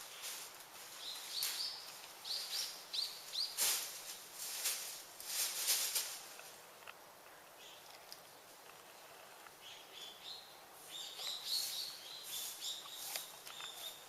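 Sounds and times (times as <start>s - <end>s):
small bird chirping: 1.0s - 3.6s, 8.6s - 14.0s.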